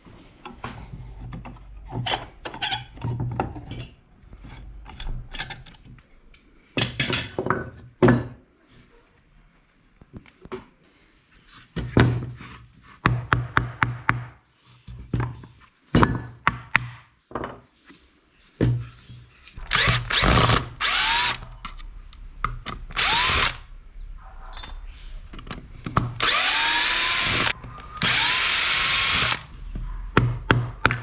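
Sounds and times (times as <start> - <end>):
power drill spinning up: 19.6 - 21.5, 22.9 - 23.7, 26.2 - 29.5.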